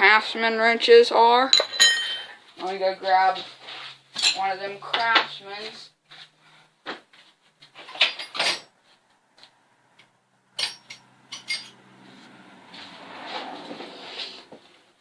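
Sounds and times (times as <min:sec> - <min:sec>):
steel wrenches clanking: 0:01.5 - 0:02.4, 0:07.8 - 0:08.7, 0:10.6 - 0:11.8
tools sliding and rustling: 0:03.3 - 0:04.3, 0:10.7 - 0:14.9.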